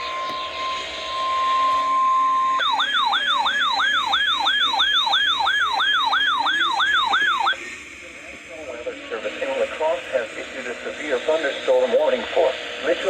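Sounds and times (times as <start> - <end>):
electronic siren alert sweeping: 0.0 - 7.6
steady warning alarm tone: 0.0 - 7.6.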